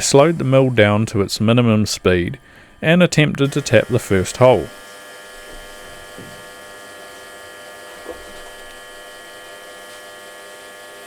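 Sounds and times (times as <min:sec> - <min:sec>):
milling motor whining: 0:00.0 - 0:11.0.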